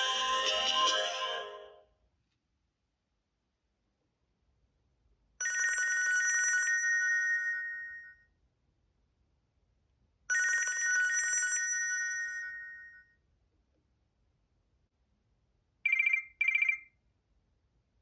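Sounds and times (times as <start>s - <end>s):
phone ringtone bell-like ring: 5.4s - 8.3s, 10.3s - 13.1s, 15.9s - 16.9s.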